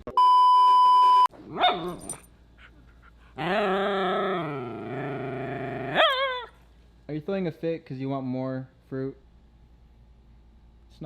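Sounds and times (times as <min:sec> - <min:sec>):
dog yipping: 0:01.5 - 0:02.2, 0:06.0 - 0:06.6
dog wavering vocalization: 0:01.6 - 0:06.6.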